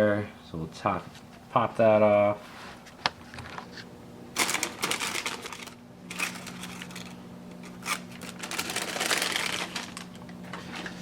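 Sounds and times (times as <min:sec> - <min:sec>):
paper crinkling: 0:03.6 - 0:11.0.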